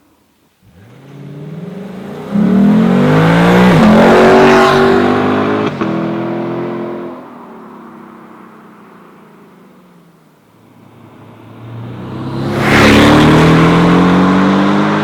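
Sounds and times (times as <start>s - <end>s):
sports car engine accelerating: 11.0s - 15.0s.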